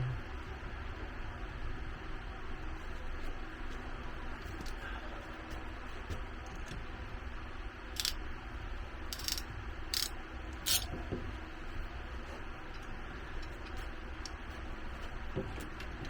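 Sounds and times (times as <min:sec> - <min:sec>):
steady low hum: 0:00.0 - 0:16.0
sharp clicks of fittings: 0:08.0 - 0:08.2, 0:09.1 - 0:10.9.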